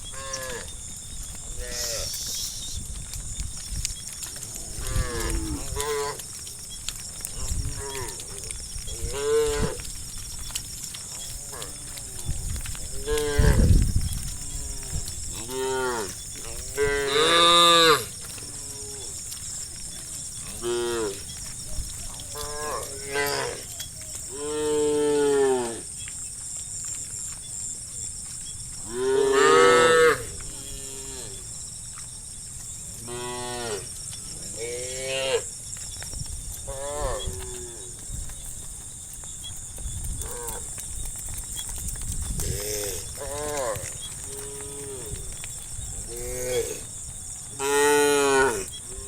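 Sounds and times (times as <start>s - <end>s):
cows mooing: 1.5s - 2.4s, 4.4s - 6.3s, 7.2s - 10.0s, 11.1s - 19.4s, 20.4s - 21.4s, 22.2s - 23.6s, 28.9s - 31.4s, 42.4s - 46.9s, 47.6s - 49.0s
high-pitched hiss: 1.6s - 2.9s.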